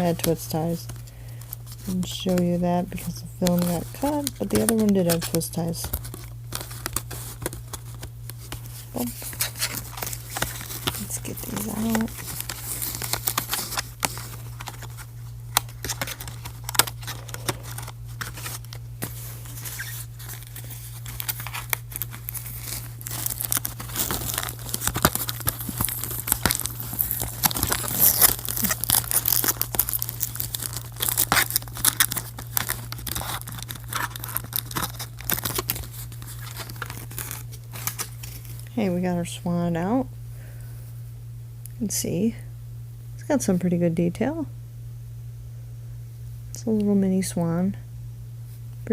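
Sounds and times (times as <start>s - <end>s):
packaging tearing and crinkling: 0.0s - 38.7s.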